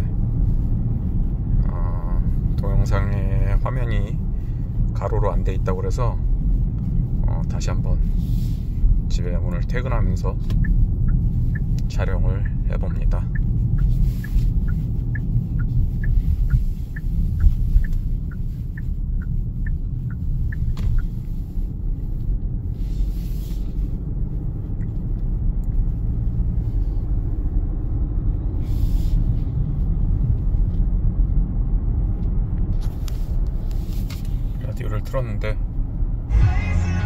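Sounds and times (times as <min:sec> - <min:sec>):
car cabin road rumble: 0:00.0 - 0:37.0
turn signal ticking: 0:00.1 - 0:28.3.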